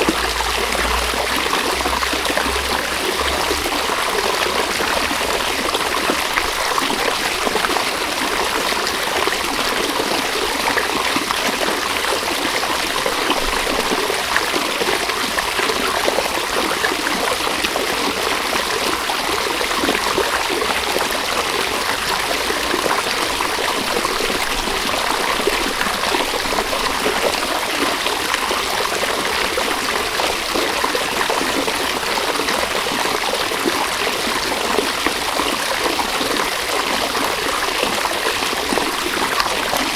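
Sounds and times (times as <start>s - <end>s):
river water babbling over stones: 0.0s - 39.9s.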